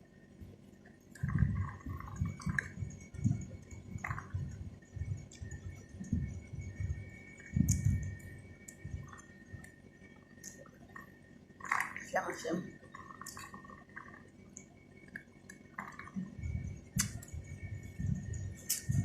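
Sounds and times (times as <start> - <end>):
chewing fruit: 12.9 - 16.4
wet mouth clicks: 13.2 - 13.5, 17.0 - 17.3.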